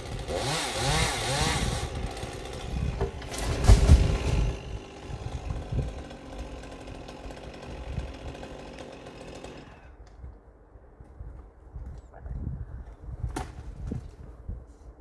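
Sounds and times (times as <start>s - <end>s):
chainsaw running: 0.0s - 10.0s
deep thud of falling tree: 2.9s - 5.9s.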